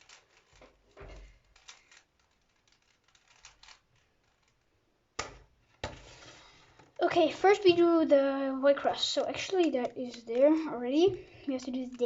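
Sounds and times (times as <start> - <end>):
sharp plastic clacks: 0.0 - 6.0, 9.2 - 12.0
puzzle cube clicks and rattles: 0.0 - 6.2, 9.1 - 12.0.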